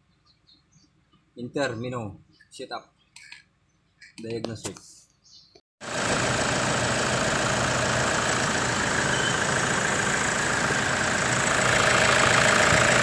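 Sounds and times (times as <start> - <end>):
car engine idling: 5.8 - 13.0.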